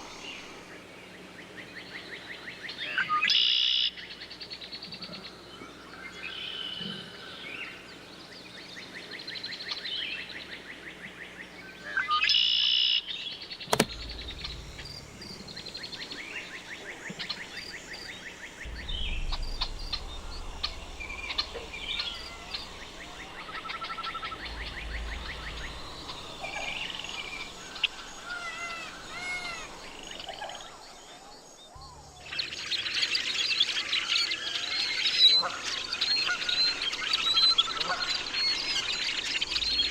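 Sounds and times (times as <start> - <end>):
songbirds singing and calling: 0.0 - 39.9
sharp click: 13.7 - 15.6
low wind rumble: 13.7 - 32.9, 36.4 - 39.9.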